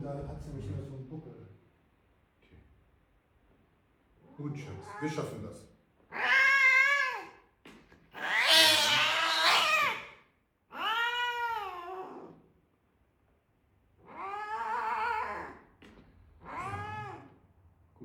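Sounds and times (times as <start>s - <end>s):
animal yowling: 6.1s - 7.4s, 8.1s - 12.4s, 14.0s - 15.7s, 16.4s - 17.4s.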